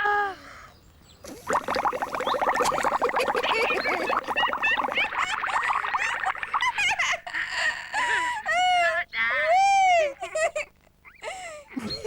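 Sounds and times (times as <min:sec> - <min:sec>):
squeaky chirps: 0:01.2 - 0:06.4.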